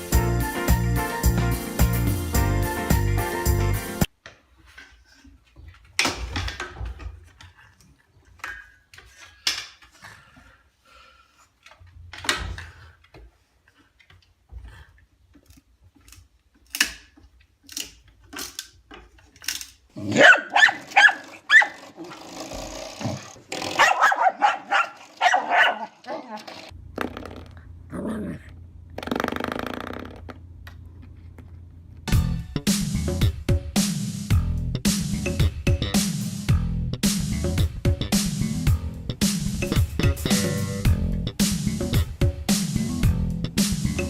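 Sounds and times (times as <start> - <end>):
dog barking and growling: 19.9 - 26.6, 27.9 - 28.6.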